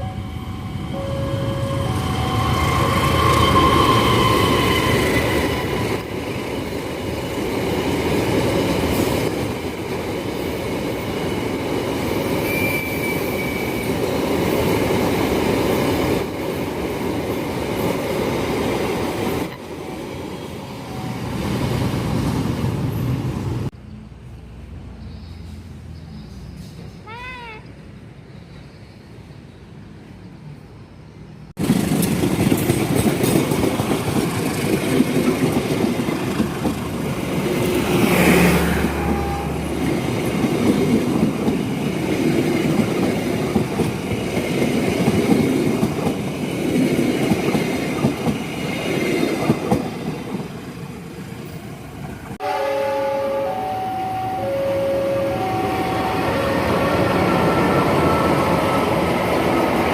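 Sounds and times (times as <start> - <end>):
train wheels rumbling on rails: 0.0 - 24.9, 31.6 - 52.4, 53.6 - 59.9
two-pitch alternating tones: 52.8 - 58.5.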